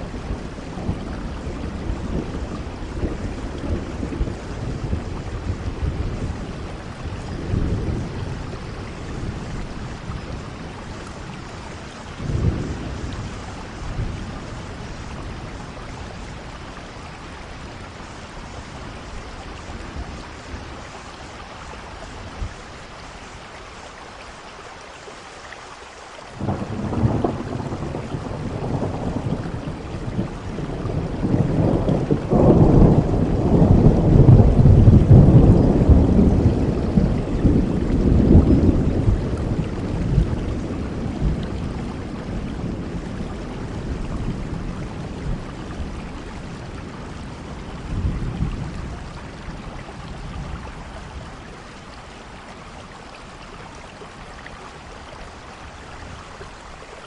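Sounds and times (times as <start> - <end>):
steady rain: 0.0 - 57.0
thunder rolling: 26.4 - 49.2.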